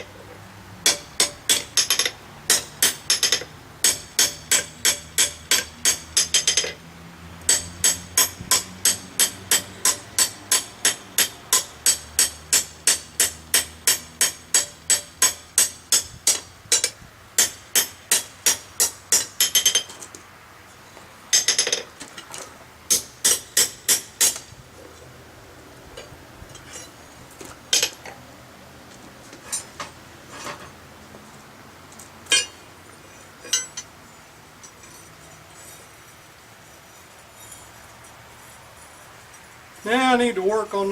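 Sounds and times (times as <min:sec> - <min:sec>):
hammer striking steel on anvil: 0:00.8 - 0:06.8, 0:07.5 - 0:19.9, 0:21.3 - 0:21.8, 0:22.9 - 0:24.5, 0:32.3 - 0:32.6, 0:33.5 - 0:33.9.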